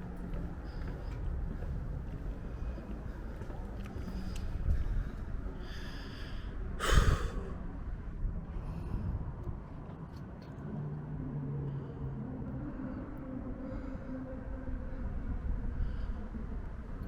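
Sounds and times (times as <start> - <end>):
person breathing heavily: 4.0 - 7.7.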